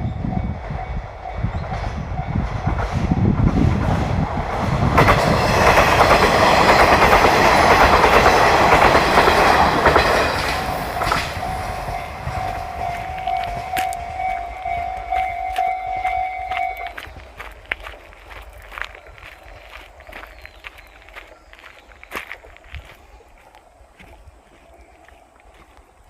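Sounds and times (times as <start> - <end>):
train wheels clattering: 4.8 - 18.8
level crossing warning bell: 10.6 - 17.0.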